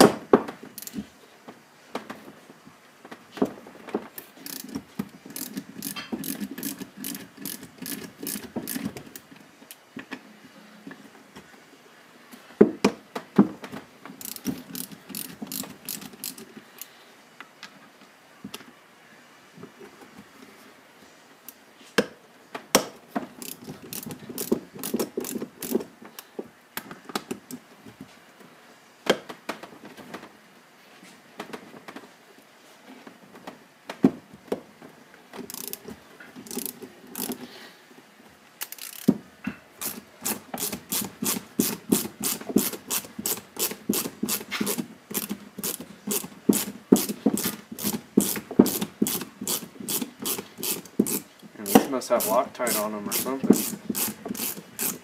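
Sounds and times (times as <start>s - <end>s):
ratchet wrench clicking: 0.8s - 1.0s, 4.4s - 8.9s, 14.2s - 16.4s, 23.4s - 25.8s, 35.5s - 35.8s, 36.4s - 37.4s, 38.6s - 39.1s, 39.8s - 51.3s, 52.2s - 55.0s.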